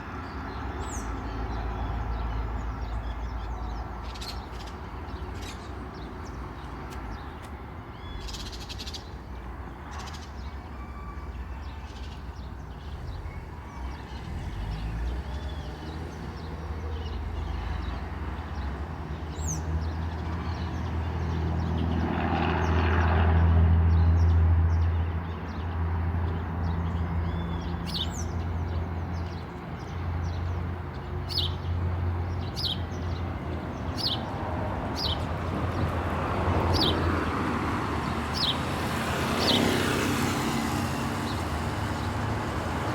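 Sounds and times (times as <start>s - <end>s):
road traffic hum: 0.0s - 42.9s
vehicle passing: 12.5s - 42.9s
bird chirping: 26.9s - 34.3s.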